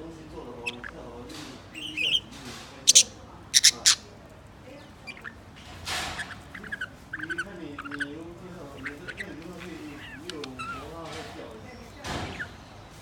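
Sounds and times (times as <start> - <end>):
harsh bird squawks: 0.6 - 1.0, 1.7 - 2.3, 2.9 - 4.1, 5.0 - 5.4, 6.0 - 11.0
bird chirp: 0.6 - 13.0.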